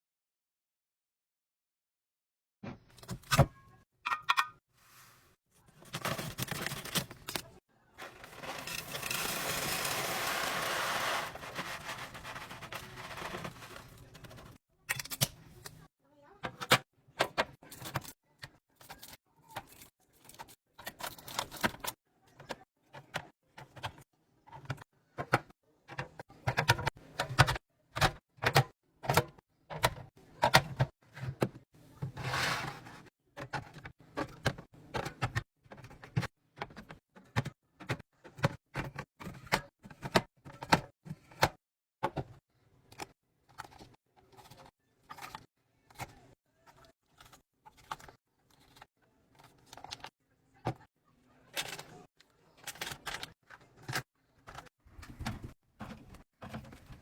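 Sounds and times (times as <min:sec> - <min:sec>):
food packages clattering: 0:05.8 - 0:14.6.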